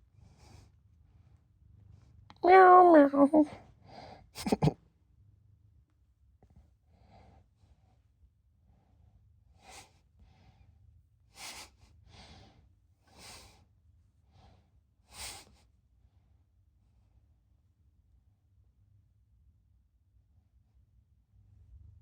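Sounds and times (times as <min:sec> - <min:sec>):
soft breaths close to microphone: 0:00.0 - 0:02.3, 0:06.5 - 0:17.2.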